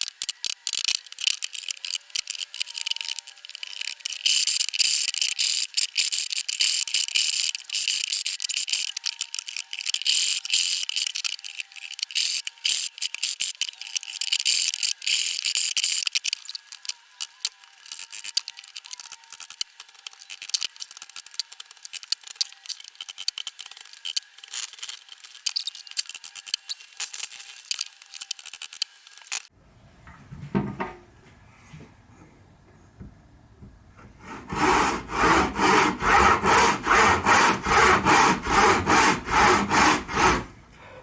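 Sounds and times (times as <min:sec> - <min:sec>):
hand tool scraping wood: 0:00.0 - 0:29.5.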